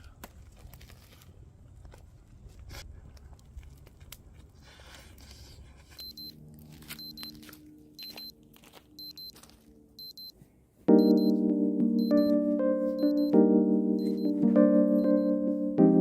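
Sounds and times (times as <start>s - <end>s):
soft low music notes: 5.7s - 16.0s.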